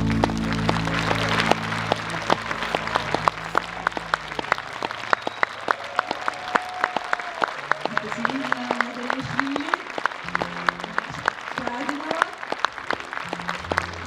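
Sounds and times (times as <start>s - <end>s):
band's final chord: 0.0s - 3.6s
audience applauding: 0.0s - 14.0s.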